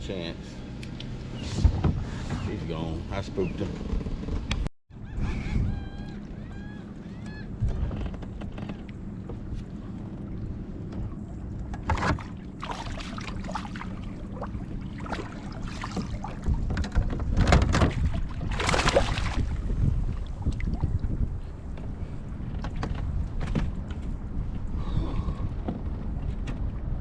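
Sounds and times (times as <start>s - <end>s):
wind rumbling on microphone: 1.2s - 27.0s
water splashing against kayak hull: 10.8s - 21.8s.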